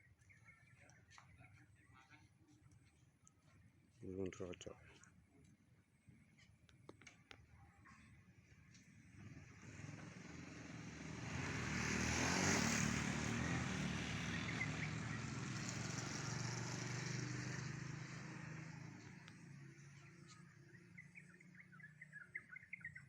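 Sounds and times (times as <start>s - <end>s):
motor vehicle passing by: 8.4s - 23.0s.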